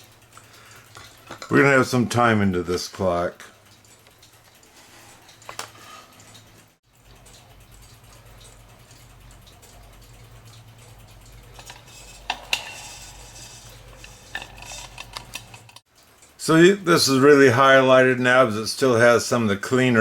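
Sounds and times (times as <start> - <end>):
steady low hum: 6.2 - 16.2
clock case pieces clicking: 11.4 - 15.8.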